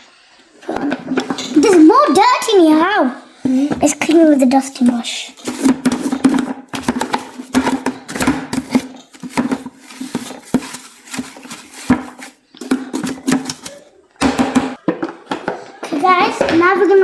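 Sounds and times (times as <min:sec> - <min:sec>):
brush scraping plastic: 0:03.5 - 0:13.9, 0:15.8 - 0:17.0
plastic knocks and clicks: 0:04.8 - 0:17.0.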